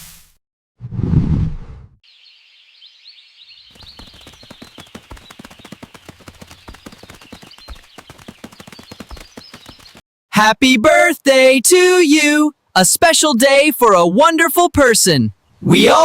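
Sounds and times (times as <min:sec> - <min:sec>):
steady high chirping: 0:03.7 - 0:10.0
hoofbeats clattering: 0:03.8 - 0:10.0.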